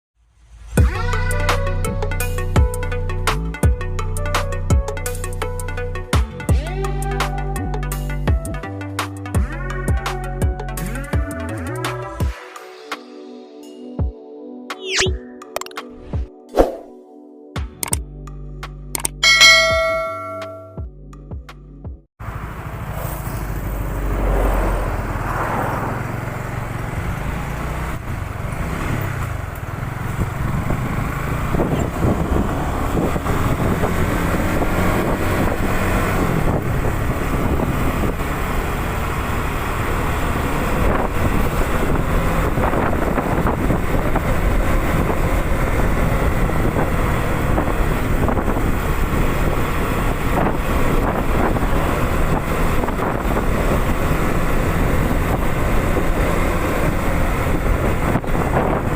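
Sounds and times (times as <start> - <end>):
motorcycle engine accelerating: 22.2 - 58.9.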